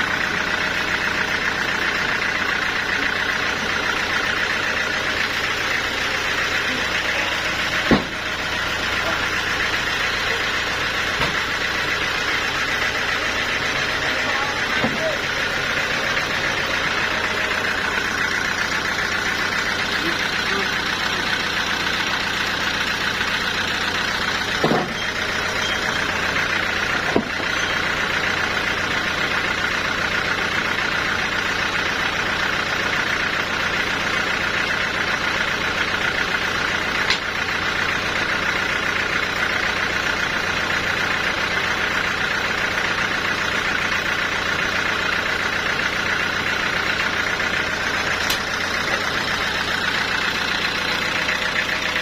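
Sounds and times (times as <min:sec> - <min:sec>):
machinery high whine: 0:00.0 - 0:29.7.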